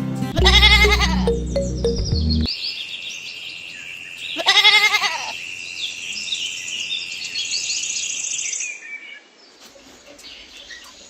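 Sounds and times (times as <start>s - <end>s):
goat or sheep bleating: 0.4s - 1.3s, 4.4s - 5.4s
birds chirping: 0.4s - 11.0s.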